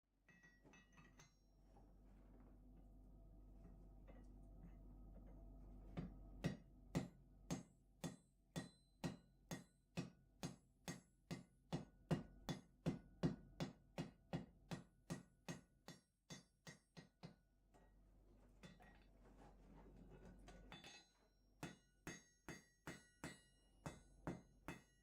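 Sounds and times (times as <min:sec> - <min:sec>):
hammer striking steel on anvil: 0:06.4 - 0:17.4, 0:20.7 - 0:25.0.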